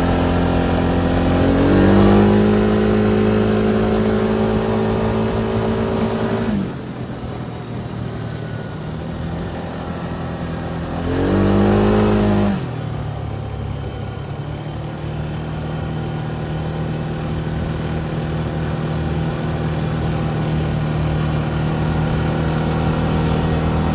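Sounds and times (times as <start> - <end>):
engine revving: 0.0 - 6.9, 10.8 - 13.0
vehicle engine running: 0.0 - 23.9.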